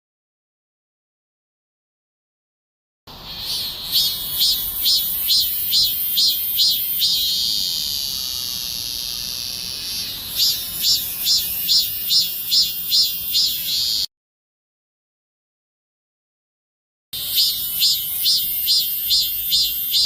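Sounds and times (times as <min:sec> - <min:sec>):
cicada singing: 0:03.1 - 0:14.1, 0:17.2 - 0:20.0.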